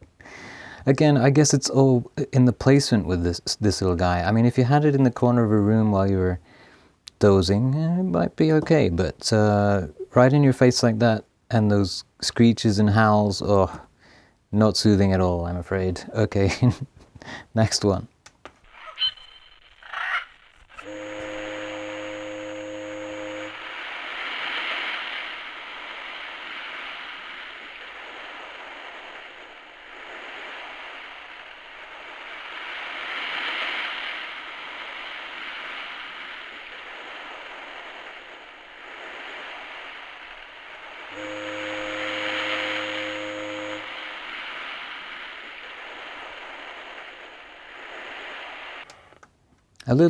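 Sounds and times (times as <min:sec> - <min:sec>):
foghorn blast: 0:20.8 - 0:24.6, 0:41.1 - 0:44.9
surf from a small speaker: 0:20.8 - 0:49.1.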